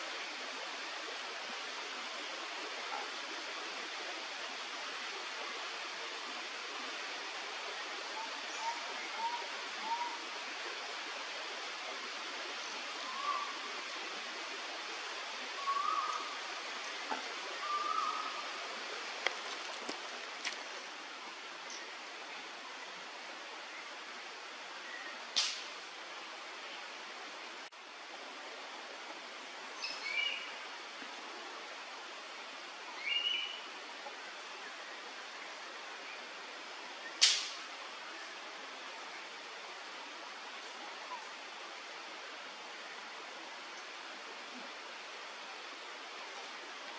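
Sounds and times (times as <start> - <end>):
outdoor background noise: 0.0 - 46.9
steady background hiss: 0.0 - 46.9
whistled bird notes: 15.6 - 16.3.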